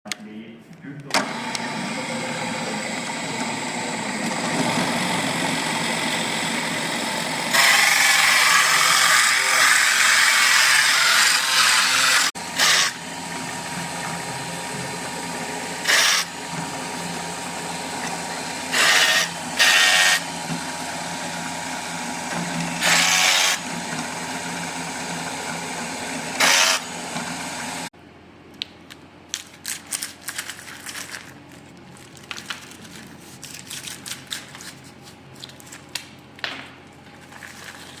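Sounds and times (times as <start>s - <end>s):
power tool cutting wood: 1.2s - 27.9s.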